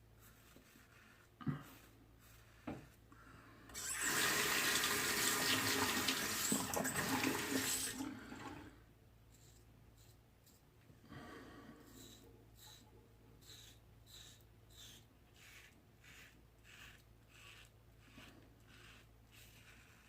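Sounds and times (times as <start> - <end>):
tap water running into sink: 4.0 - 8.6
razor scraping stubble: 13.4 - 20.0.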